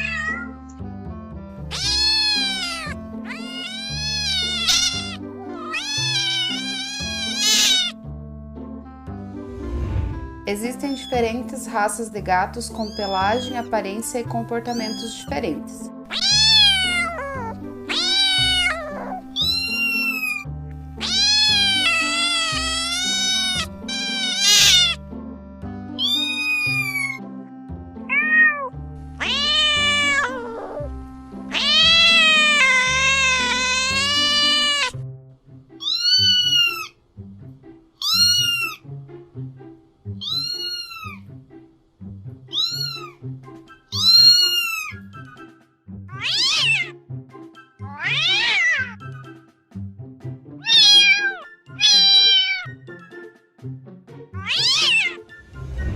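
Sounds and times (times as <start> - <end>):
cats meowing: 0.0 - 0.5, 1.6 - 8.0, 12.8 - 13.7, 16.1 - 20.4, 21.0 - 25.0, 26.0 - 27.2, 28.0 - 30.9, 31.5 - 35.0, 35.8 - 37.0, 38.0 - 38.8, 40.1 - 41.2, 42.5 - 43.2, 43.9 - 45.1, 46.1 - 47.0, 47.8 - 49.1, 50.6 - 52.8, 54.4 - 55.2
background music: 0.0 - 55.9.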